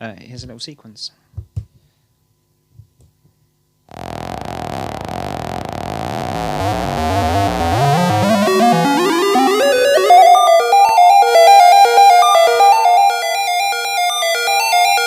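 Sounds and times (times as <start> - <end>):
noisy synth wash: 3.9 - 14.0
fast stepping synth notes: 3.9 - 14.1.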